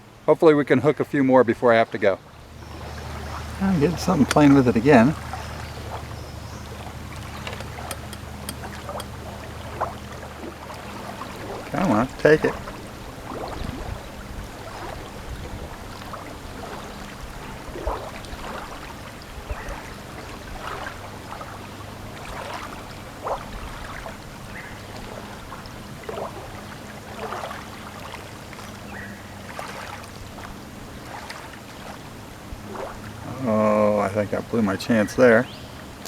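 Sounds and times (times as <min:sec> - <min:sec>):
water washing: 0:02.0 - 0:36.0
low hum: 0:02.2 - 0:18.3.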